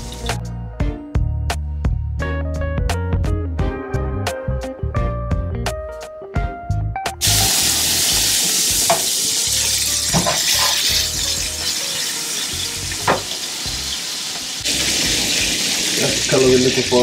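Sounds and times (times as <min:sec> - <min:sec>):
burger patties sizzling in pan: 0:07.2 - 0:17.0
clinks and scrapes against pan: 0:10.1 - 0:11.2.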